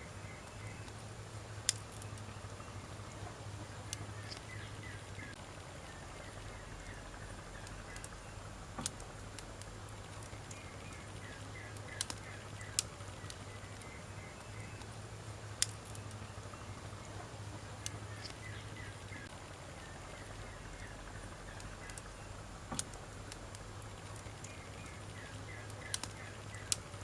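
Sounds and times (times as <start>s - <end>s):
firewood crackling: 0.0s - 27.0s
low hiss of fire: 0.0s - 27.0s
sharp pops of fire: 0.6s - 2.6s, 6.4s - 16.2s, 20.3s - 27.0s.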